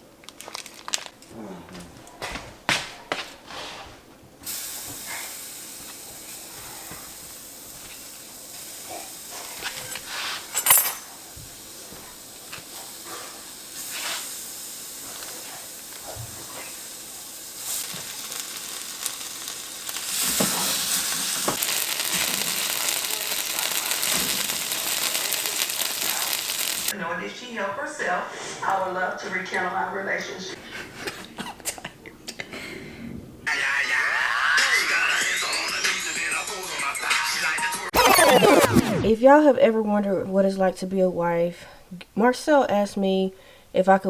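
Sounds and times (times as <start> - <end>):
food sizzling in a pan: 4.4 - 27.0.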